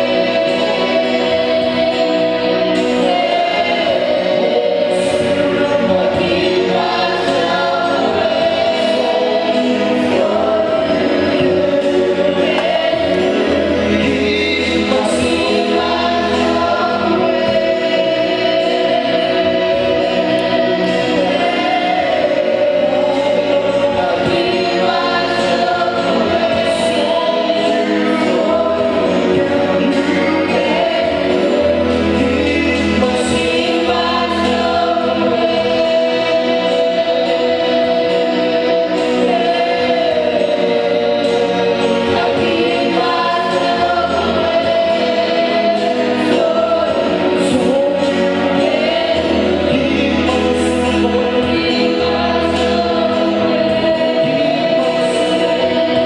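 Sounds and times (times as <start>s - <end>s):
accompanying music: 0.0s - 56.0s
choir singing gospel song: 0.0s - 56.0s.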